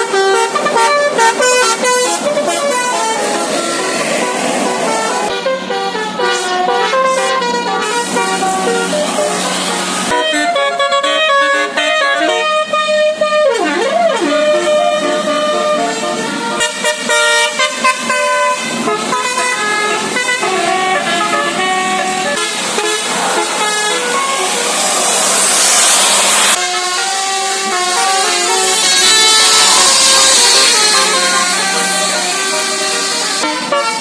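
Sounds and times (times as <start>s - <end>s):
rushing noise: 0.0s - 5.4s, 21.8s - 27.1s
musical air horn tune: 0.0s - 34.0s.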